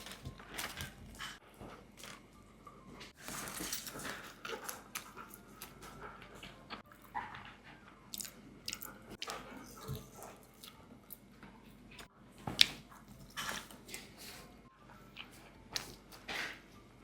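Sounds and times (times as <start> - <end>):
person chewing soft cake: 4.2 - 12.0.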